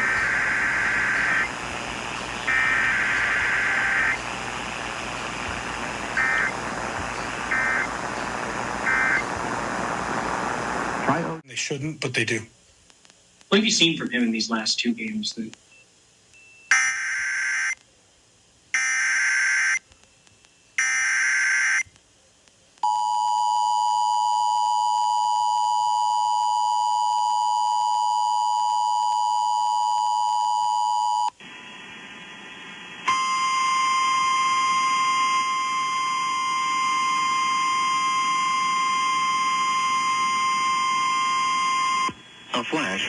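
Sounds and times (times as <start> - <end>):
hiss: 0.0 - 11.4
screeching data bursts: 0.0 - 11.4
steady warning tone: 0.0 - 11.4.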